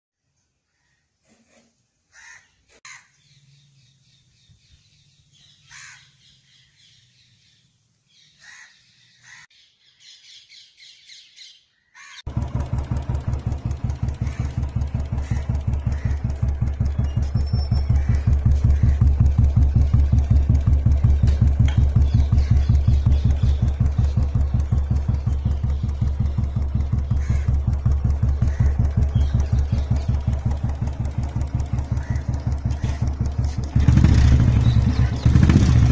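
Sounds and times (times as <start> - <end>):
motorcycle idling: 12.3 - 35.9
faint bird chirps: 14.2 - 33.7.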